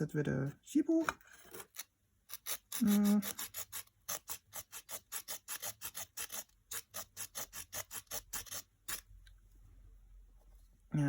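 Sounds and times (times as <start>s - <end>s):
small saw rasping through wood: 1.4s - 9.1s.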